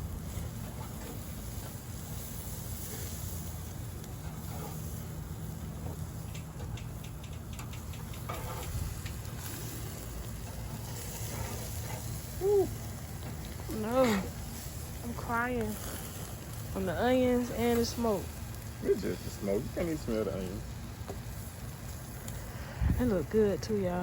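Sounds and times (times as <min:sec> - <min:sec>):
burger patties sizzling on grill: 0:00.0 - 0:24.0
small pops and crackles: 0:05.8 - 0:22.5.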